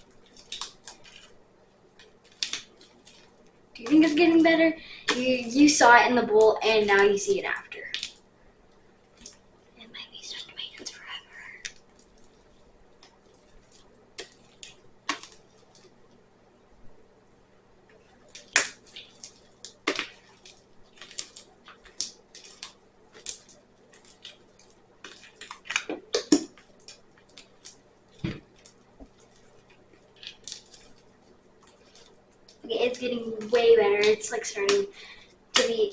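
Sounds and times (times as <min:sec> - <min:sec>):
sticky slime kneaded by hand: 0:10.6 - 0:16.0, 0:17.9 - 0:35.9.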